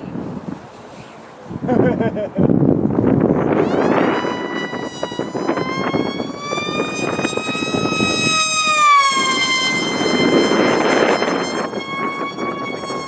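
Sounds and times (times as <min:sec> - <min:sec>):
wind on microphone: 0:00.0 - 0:13.0
model plane motor whining: 0:03.5 - 0:13.0.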